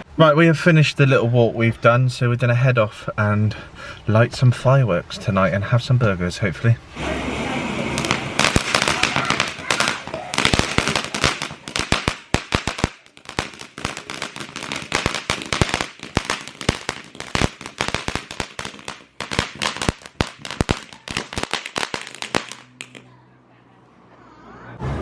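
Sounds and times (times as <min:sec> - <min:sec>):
crackling fireworks: 0:06.6 - 0:23.1.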